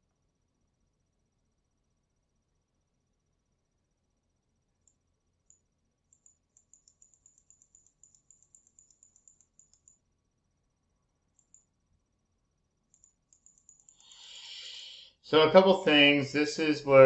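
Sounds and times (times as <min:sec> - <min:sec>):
computer input clicking: 0:13.0 - 0:14.1.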